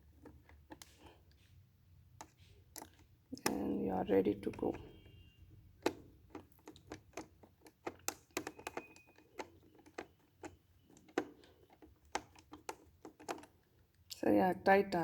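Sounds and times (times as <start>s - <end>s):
plastic parts being handled: 0.0s - 5.2s, 5.8s - 14.0s.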